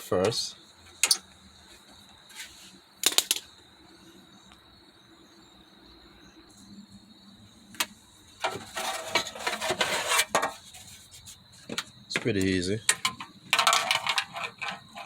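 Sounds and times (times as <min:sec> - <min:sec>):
metal clattering and rattling: 0:08.4 - 0:11.0, 0:12.9 - 0:15.0
hand tools clinking on metal: 0:11.7 - 0:15.0.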